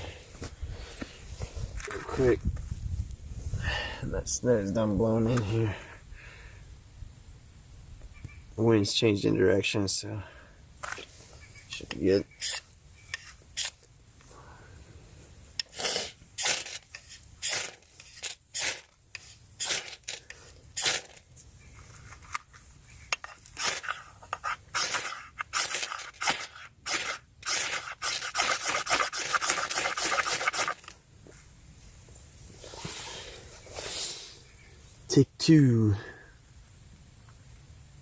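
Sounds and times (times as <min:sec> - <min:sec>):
ferro rod scraping: 0:12.3 - 0:13.8, 0:16.4 - 0:31.0.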